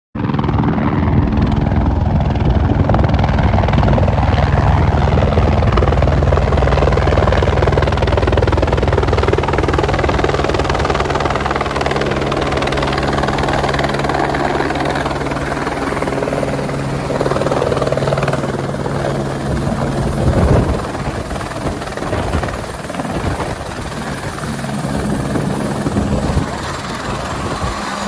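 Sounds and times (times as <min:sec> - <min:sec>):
helicopter rotor and engine: 0:00.2 - 0:28.0.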